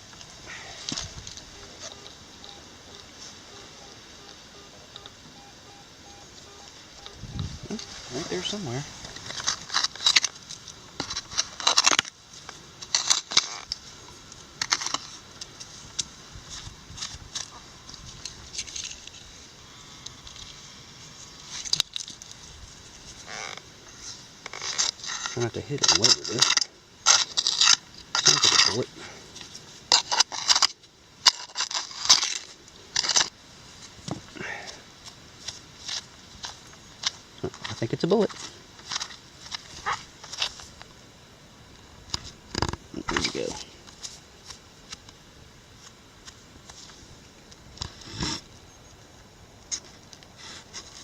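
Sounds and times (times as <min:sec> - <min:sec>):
digging tool scraping gravel: 0:07.7 - 0:13.9, 0:23.0 - 0:29.2, 0:29.8 - 0:34.6.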